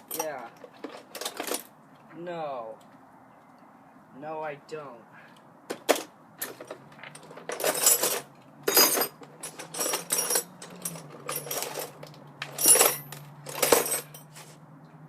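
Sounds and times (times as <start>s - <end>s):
metal tools clinking in toolbox: 0.0s - 1.7s, 5.7s - 14.5s.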